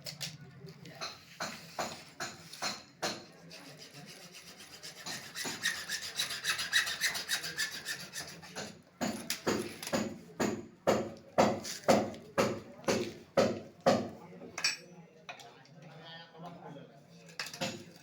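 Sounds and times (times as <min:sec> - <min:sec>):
hand tool rasping against pipe: 0:01.4 - 0:09.1.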